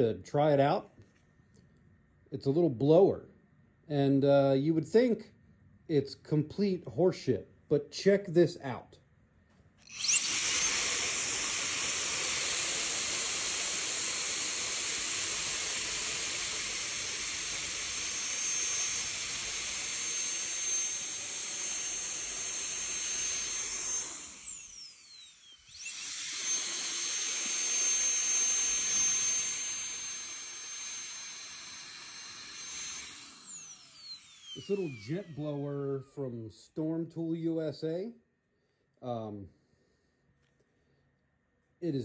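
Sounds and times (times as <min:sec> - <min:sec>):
jet blower high-pitched whine: 0:09.9 - 0:35.8.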